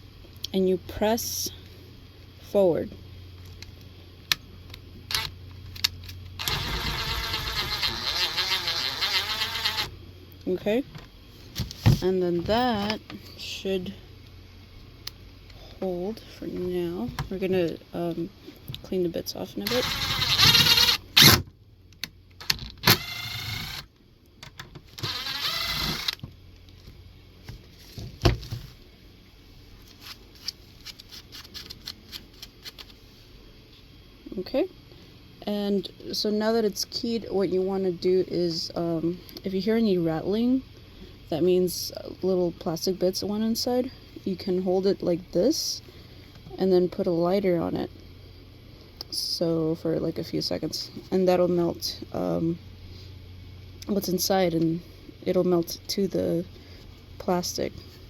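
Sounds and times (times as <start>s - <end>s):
power drill driving a screw: 6.4s - 9.9s, 19.7s - 21.4s, 22.8s - 23.9s, 25.0s - 26.2s.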